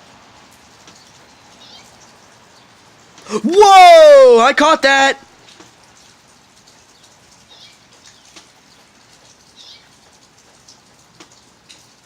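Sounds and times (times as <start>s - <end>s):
steady rain: 0.0s - 12.0s
drips hitting a surface: 5.4s - 12.0s.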